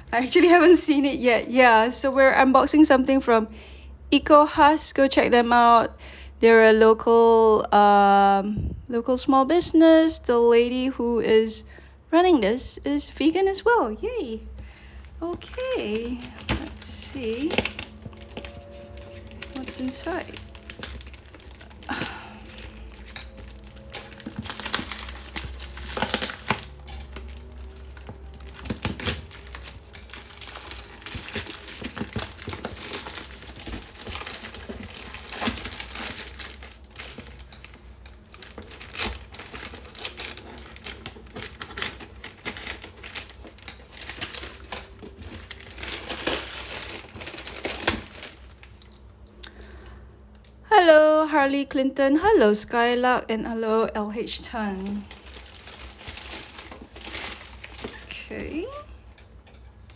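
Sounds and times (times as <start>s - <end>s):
hands handling parcel packaging: 13.5s - 50.6s, 54.3s - 59.9s.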